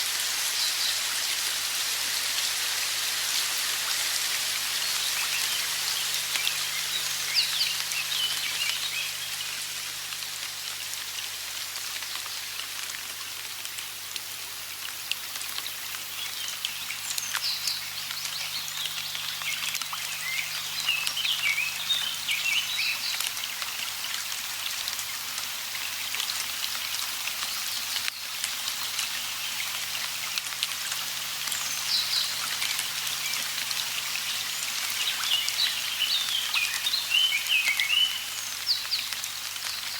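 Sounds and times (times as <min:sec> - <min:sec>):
rain falling: 0:00.0 - 0:39.9
birds chirping: 0:04.8 - 0:09.8, 0:16.2 - 0:23.2.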